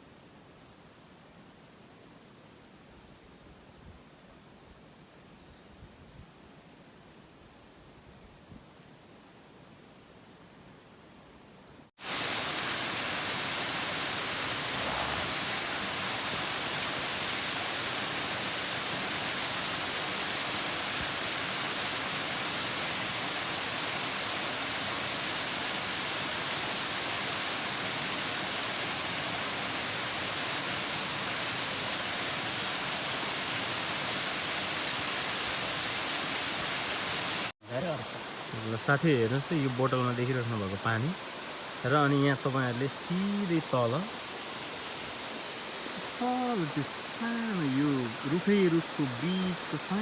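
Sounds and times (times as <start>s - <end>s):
water rushing from waterfall: 12.0s - 50.0s.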